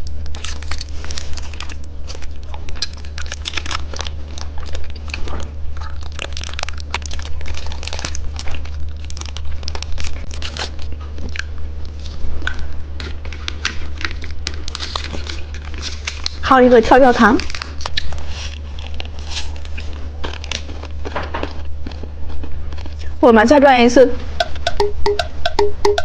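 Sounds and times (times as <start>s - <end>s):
hard candy crunching: 0.1s - 11.5s
plastic wrapper crinkling: 0.2s - 10.9s.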